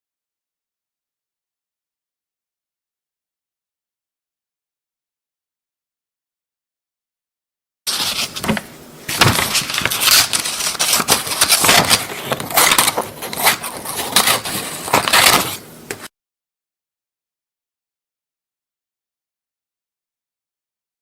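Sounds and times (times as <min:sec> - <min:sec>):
paper rustling: 0:07.9 - 0:16.1
scissors cutting paper: 0:07.9 - 0:16.1.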